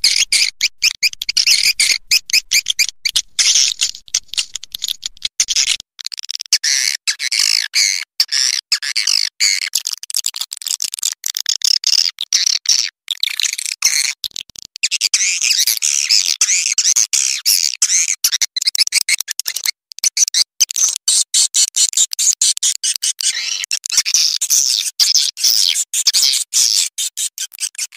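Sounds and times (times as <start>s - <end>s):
swiftlets twittering: 0.0s - 5.8s.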